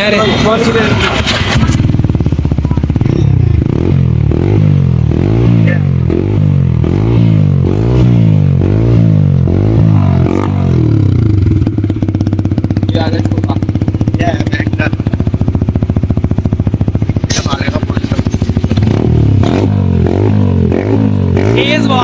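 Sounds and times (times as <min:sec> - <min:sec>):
motorcycle engine revving: 0:00.0 - 0:22.0.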